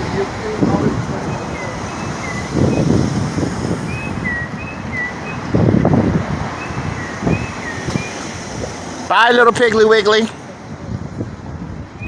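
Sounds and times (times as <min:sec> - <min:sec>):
traffic noise: 0:00.0 - 0:12.0
wind on microphone: 0:00.0 - 0:12.0
high bird chirp: 0:01.3 - 0:03.0, 0:06.6 - 0:08.2.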